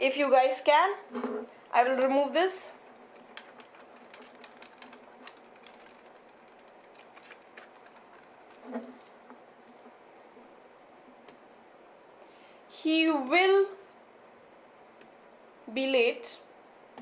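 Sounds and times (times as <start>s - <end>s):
keyboard typing: 1.9s - 9.9s.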